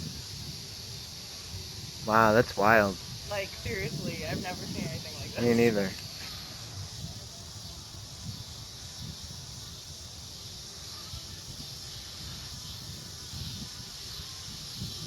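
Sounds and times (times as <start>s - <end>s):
steady high hiss: 0.0s - 15.0s
wind buffeting microphone: 0.0s - 15.0s.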